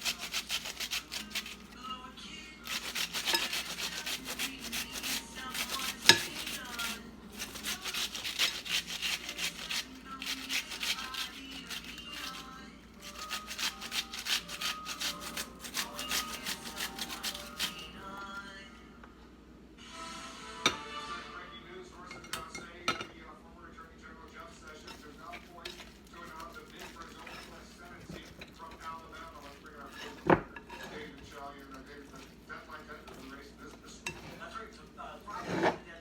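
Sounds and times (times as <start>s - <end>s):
onion rasping on a hand grater: 0.0s - 1.8s, 2.6s - 17.9s, 24.9s - 33.3s.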